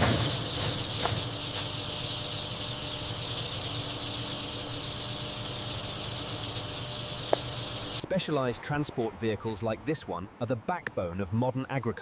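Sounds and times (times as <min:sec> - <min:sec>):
chicks peeping: 0:00.0 - 0:08.0
steady low hum: 0:00.0 - 0:08.1.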